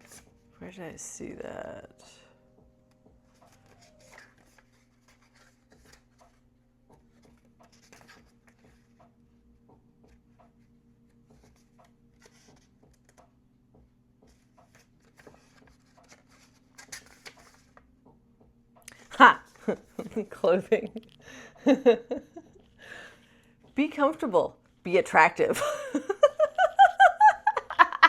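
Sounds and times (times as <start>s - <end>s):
paper pages turning: 0.0s - 0.3s, 3.3s - 9.0s, 11.1s - 13.2s, 14.3s - 17.9s
low steady hum: 0.0s - 28.0s.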